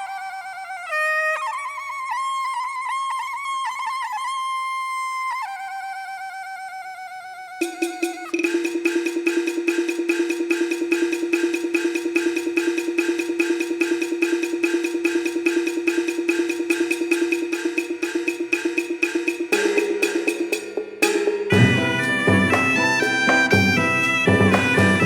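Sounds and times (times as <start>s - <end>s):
fast wood block beat: 7.6s - 25.0s
long held instrumental note: 21.5s - 25.0s.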